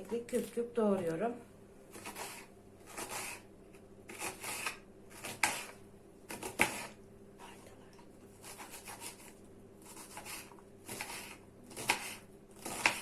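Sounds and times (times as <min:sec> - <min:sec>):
knife dicing onion: 0:01.9 - 0:07.0, 0:08.4 - 0:13.0.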